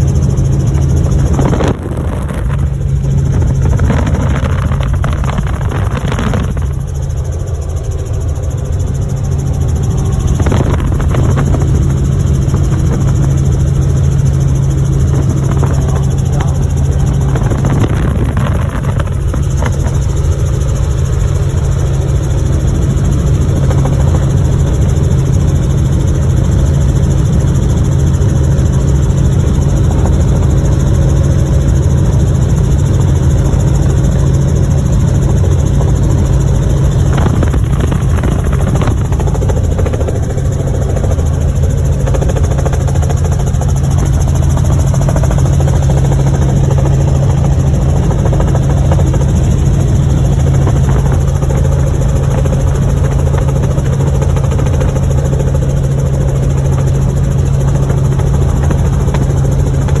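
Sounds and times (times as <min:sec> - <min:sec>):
helicopter engine and rotors droning: 0:00.0 - 1:00.0.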